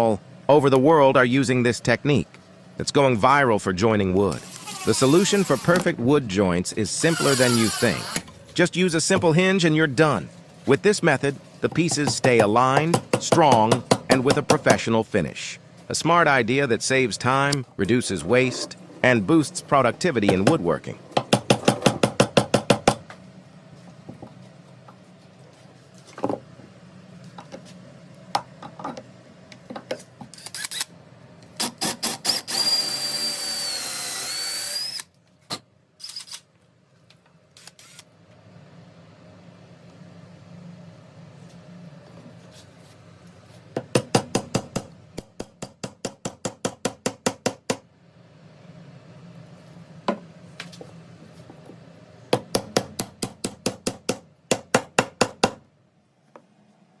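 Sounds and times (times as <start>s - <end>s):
power drill whining: 4.4s - 5.8s, 7.0s - 8.3s, 32.2s - 35.1s.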